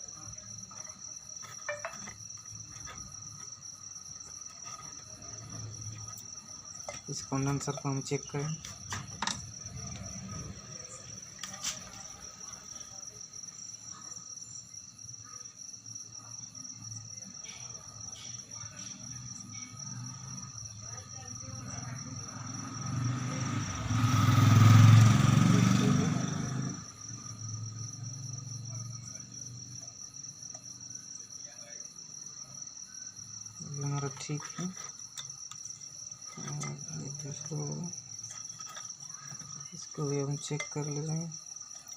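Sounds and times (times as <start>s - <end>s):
crickets chirping: 0.0s - 41.9s
passing vehicle engine rumble: 9.4s - 12.5s, 21.4s - 29.0s.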